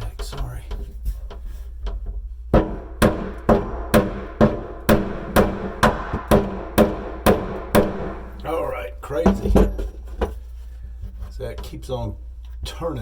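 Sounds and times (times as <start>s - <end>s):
hammer blows ringing: 2.6s - 9.9s.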